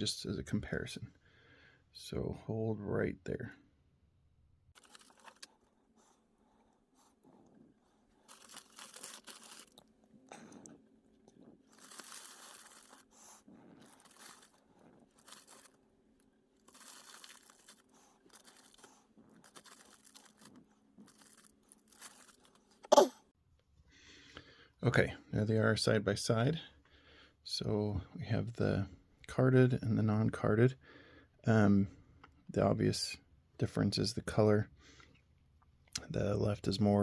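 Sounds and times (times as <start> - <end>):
faint steady hum: 0.0 - 37.0
plastic packaging rustling: 4.8 - 5.7, 8.2 - 10.5, 11.4 - 22.8.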